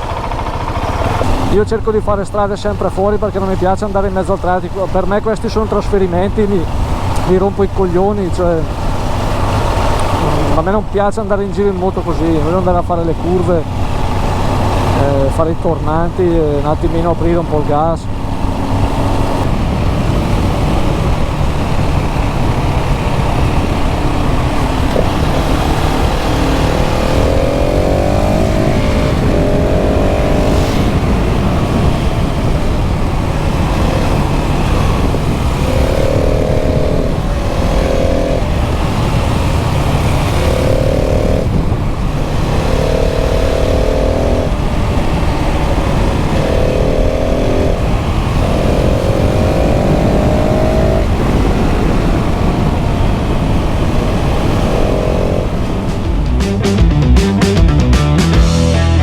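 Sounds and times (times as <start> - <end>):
motorcycle engine revving: 0.0 - 59.0
wind noise: 13.1 - 56.3.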